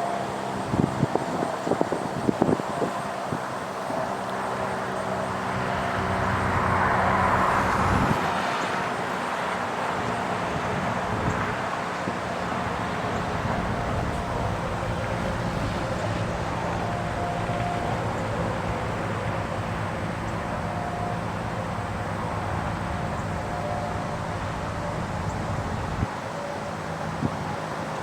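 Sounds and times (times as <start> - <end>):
passing vehicle: 0.0 - 28.0
warning siren winding down: 0.0 - 28.0.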